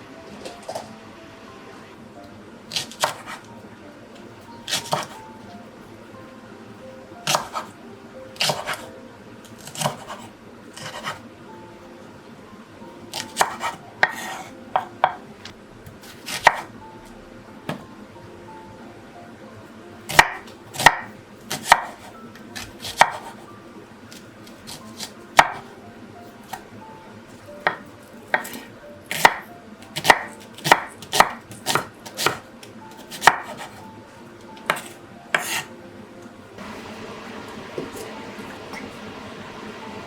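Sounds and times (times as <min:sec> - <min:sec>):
knife chopping on cutting board: 0:02.7 - 0:03.5, 0:04.7 - 0:05.2, 0:07.2 - 0:07.7, 0:08.4 - 0:08.9, 0:09.6 - 0:11.2, 0:13.2 - 0:15.2, 0:16.0 - 0:16.7, 0:20.1 - 0:23.4, 0:24.7 - 0:25.7, 0:27.6 - 0:29.4, 0:30.0 - 0:33.8, 0:34.6 - 0:35.7.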